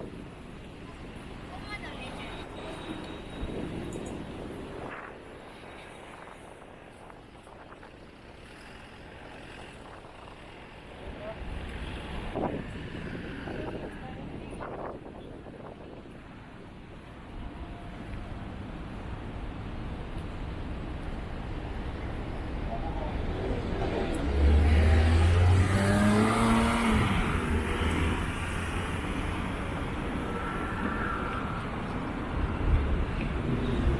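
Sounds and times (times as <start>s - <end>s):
street noise: 0.0s - 33.9s
vehicle driving past: 23.3s - 29.6s.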